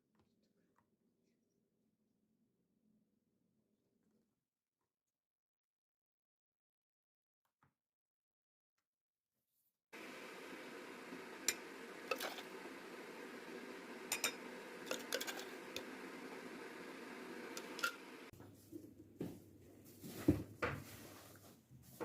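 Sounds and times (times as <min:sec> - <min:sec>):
dishes and utensils clinking: 0:10.0 - 0:18.2
steady hum: 0:10.0 - 0:18.3.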